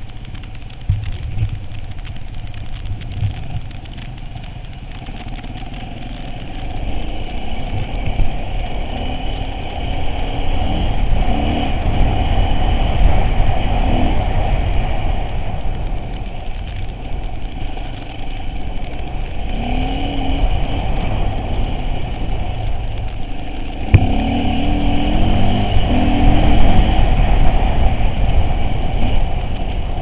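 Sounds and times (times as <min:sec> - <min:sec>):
vehicle engine rumbling: 0:00.0 - 0:30.0
sharp knock: 0:23.9 - 0:24.2.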